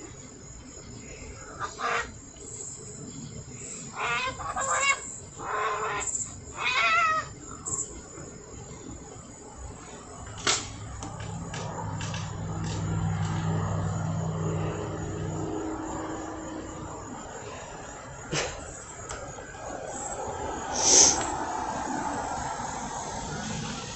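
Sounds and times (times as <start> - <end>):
cats yowling: 4.0 - 7.4
low engine hum: 10.8 - 17.4.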